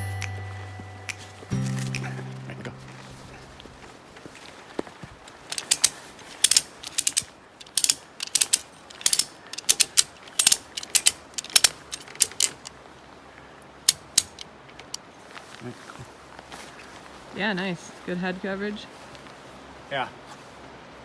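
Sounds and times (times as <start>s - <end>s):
ratchet clicking: 5.5s - 12.7s, 13.9s - 15.0s.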